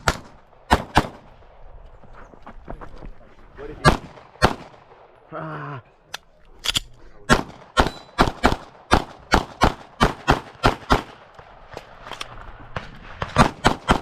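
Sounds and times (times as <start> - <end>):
rapid pistol shots: 0.0 - 1.3, 3.8 - 5.1, 7.3 - 12.1, 12.7 - 14.0.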